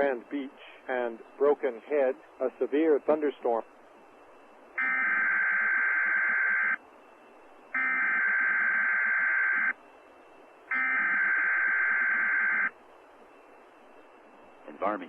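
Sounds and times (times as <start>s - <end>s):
faint radio hiss: 0.0s - 15.0s
shrill two-tone data tones: 4.8s - 15.0s.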